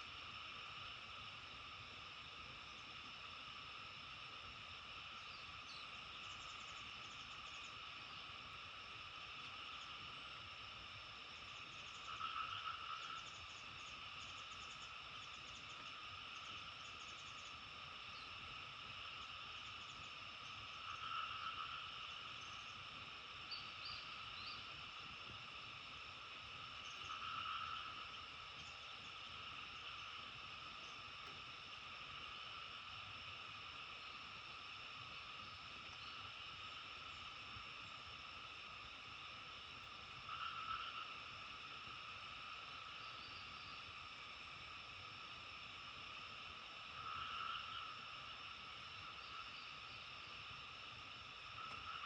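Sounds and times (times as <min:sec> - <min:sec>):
frog chorus: 0:00.0 - 0:52.0
loud frog call: 0:20.7 - 0:22.6, 0:26.8 - 0:28.4, 0:40.2 - 0:41.3, 0:46.9 - 0:48.4, 0:51.5 - 0:52.0.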